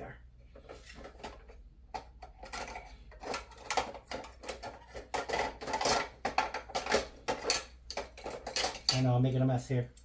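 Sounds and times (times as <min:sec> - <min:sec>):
small hard objects clinking and rattling: 0:02.3 - 0:09.1.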